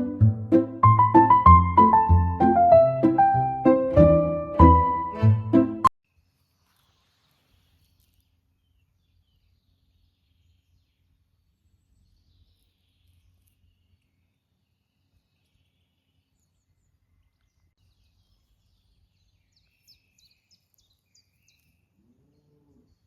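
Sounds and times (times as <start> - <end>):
faint birds chirping: 6.2 - 23.0.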